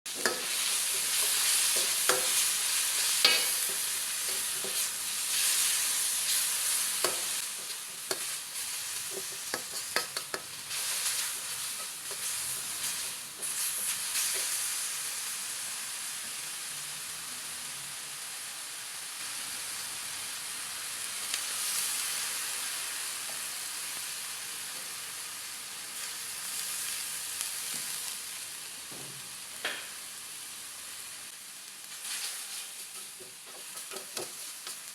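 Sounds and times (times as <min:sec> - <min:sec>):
food sizzling in a pan: 0:00.1 - 0:34.9
utensil stirring and scraping: 0:07.0 - 0:14.6, 0:32.3 - 0:34.8.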